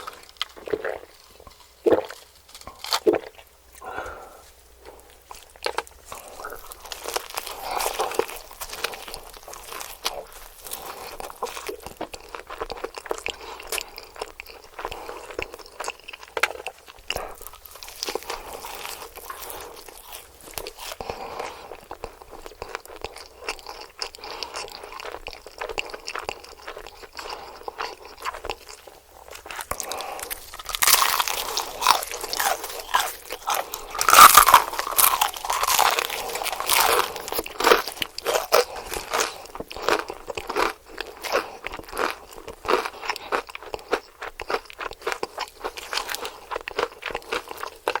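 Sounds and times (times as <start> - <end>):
crunching bites of fried chicken: 0.0 - 4.4, 5.0 - 48.0
wet chewing: 0.0 - 48.0.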